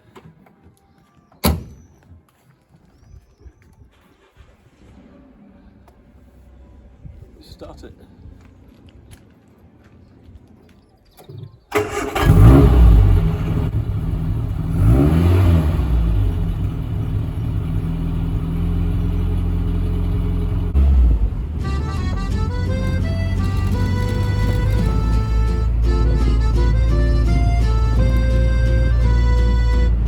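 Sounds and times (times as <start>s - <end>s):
car engine starting and revving: 4.2s - 7.0s, 11.7s - 30.0s.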